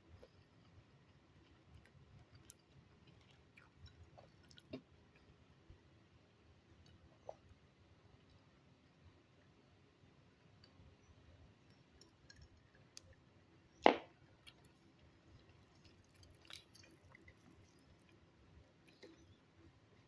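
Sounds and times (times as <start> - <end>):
wet chewing clicks: 0.5 - 5.3, 14.4 - 19.4.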